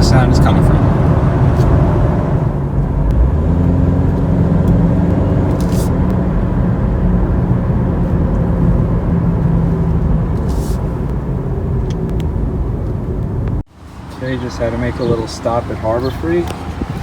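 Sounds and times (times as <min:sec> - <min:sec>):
car road noise with drone: 0:00.0 - 0:17.0.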